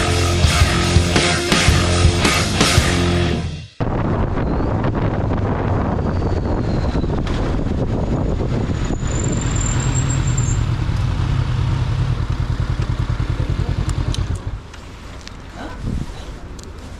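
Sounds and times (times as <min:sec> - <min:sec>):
motorcycle engine running: 0:07.5 - 0:14.7.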